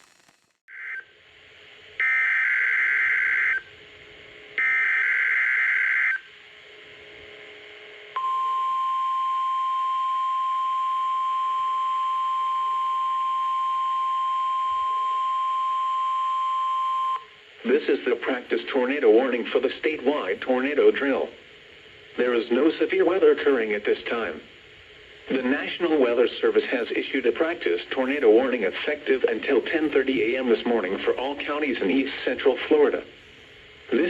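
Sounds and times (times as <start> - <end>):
harsh digital data bursts: 0.0 - 0.6
weather radio alarm tone: 2.0 - 3.7, 4.6 - 6.3.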